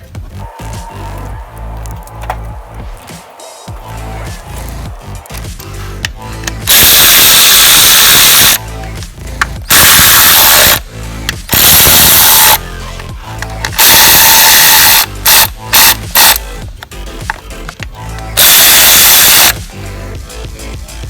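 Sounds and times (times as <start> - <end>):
power tool driving bolts: 6.6 - 8.6, 9.7 - 10.8, 11.5 - 12.6, 13.7 - 16.4, 18.4 - 19.6.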